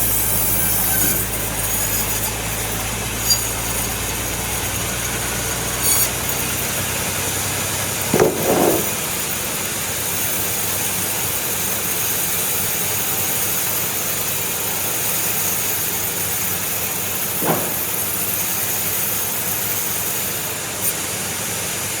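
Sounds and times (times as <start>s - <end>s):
machinery hissing: 17.3s - 18.2s.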